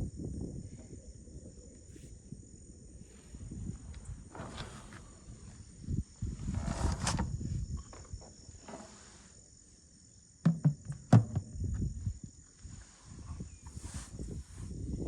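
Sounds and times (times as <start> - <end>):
high insect-like hum: 0.0 - 15.0
sharp knocks: 10.4 - 11.5.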